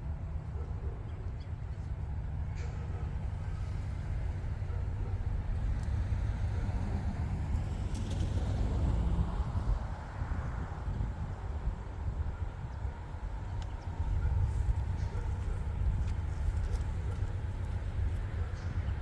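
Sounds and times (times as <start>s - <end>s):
diesel locomotives rumbling: 0.0s - 19.0s.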